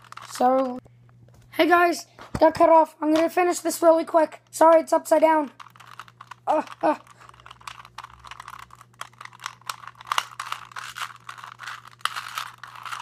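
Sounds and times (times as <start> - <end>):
puzzle cube plastic clicking: 0.0 - 0.8, 5.4 - 13.0.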